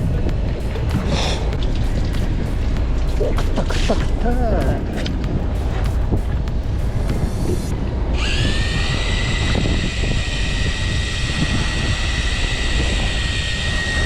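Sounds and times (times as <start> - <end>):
low rumble: 0.0 - 14.0
fishing reel motor whining: 8.1 - 14.0.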